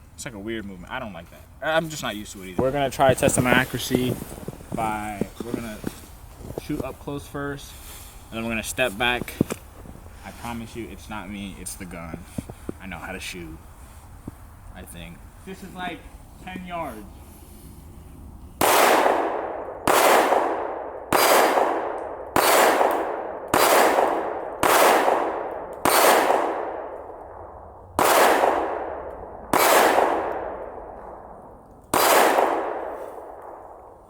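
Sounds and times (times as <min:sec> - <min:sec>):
pistol shots with ringing tail: 0:18.6 - 0:34.0.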